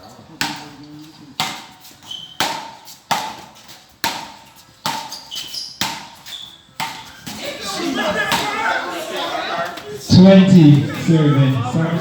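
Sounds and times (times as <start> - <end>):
wooden paddles hitting ball: 1.4 - 6.2, 6.8 - 7.4, 8.3 - 8.6.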